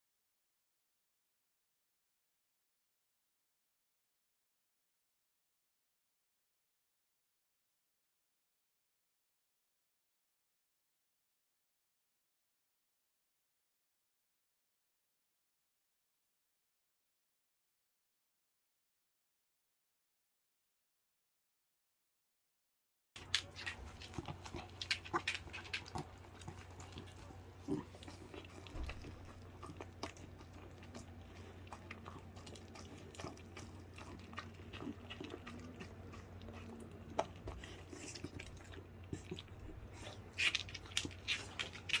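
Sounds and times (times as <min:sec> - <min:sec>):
dog chewing food: 0:23.2 - 0:42.0.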